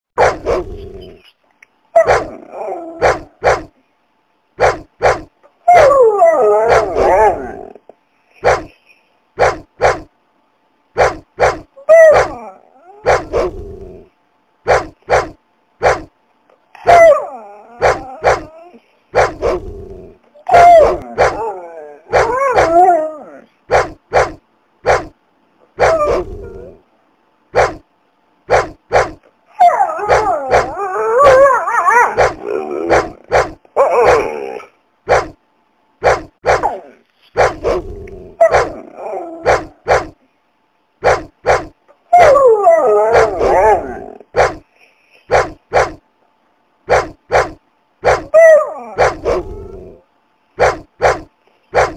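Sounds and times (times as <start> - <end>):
dogs barking sharply: 0.2 - 0.7, 2.0 - 2.4, 3.0 - 3.7, 4.6 - 5.3, 8.4 - 8.8, 9.4 - 10.1, 11.0 - 12.4, 13.0 - 13.5, 14.7 - 16.1, 19.1 - 19.6, 20.5 - 21.4, 23.7 - 25.1, 25.8 - 26.2, 27.5 - 27.8, 28.5 - 29.2, 35.1 - 35.4, 37.4 - 37.8, 38.4 - 38.8, 39.4 - 40.2, 41.0 - 41.7, 44.3 - 44.6, 45.3 - 46.0, 46.9 - 48.4, 49.0 - 49.4, 50.6 - 51.9
dogs wavering cries: 4.6 - 7.8, 11.0 - 13.5, 16.8 - 19.6, 20.4 - 24.3, 25.8 - 26.8, 28.5 - 35.3, 41.0 - 44.5, 46.9 - 50.0.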